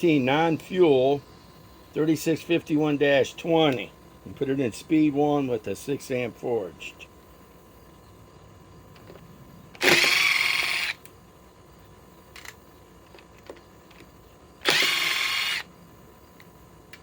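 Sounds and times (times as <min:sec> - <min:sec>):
impact driver running: 0:09.8 - 0:11.0, 0:14.6 - 0:15.7.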